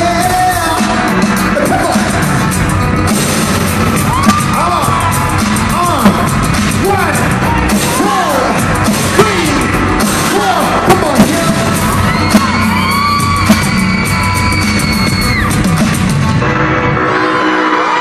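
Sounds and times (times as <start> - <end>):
live pop music: 0.0 - 18.0
audience yelling and whooping: 3.7 - 8.8, 11.5 - 16.1, 16.8 - 18.0.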